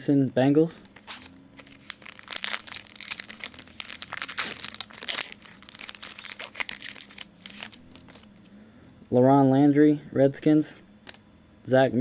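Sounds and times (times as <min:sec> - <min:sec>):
foil wrapper crinkling: 0:00.9 - 0:08.4.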